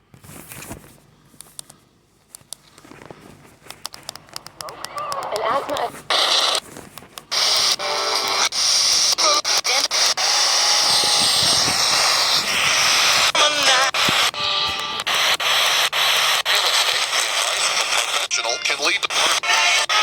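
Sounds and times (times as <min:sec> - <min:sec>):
radio static hiss: 0:04.5 - 0:06.6, 0:07.3 - 0:20.0
garbled radio voice: 0:04.6 - 0:06.6, 0:08.4 - 0:12.1, 0:12.9 - 0:14.3, 0:16.4 - 0:20.0.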